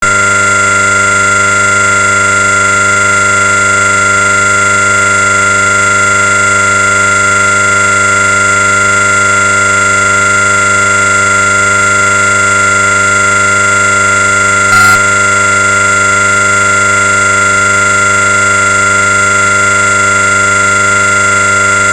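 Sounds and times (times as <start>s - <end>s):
synthetic electronic drone: 14.7s - 15.2s.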